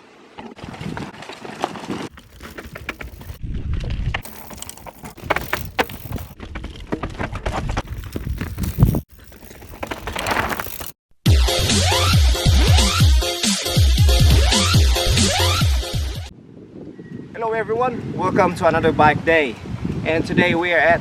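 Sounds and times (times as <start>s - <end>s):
bike tyre noise on rough ground: 0.6s - 11.0s
bike rattles and knocks: 1.7s - 3.4s, 4.2s - 11.0s.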